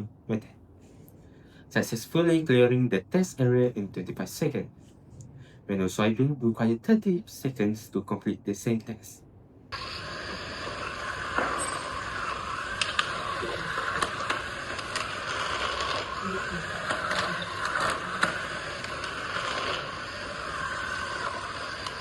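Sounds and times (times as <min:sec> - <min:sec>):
electric motor whine: 0:09.7 - 0:22.0
sharp clicks and scrapes: 0:11.1 - 0:22.0.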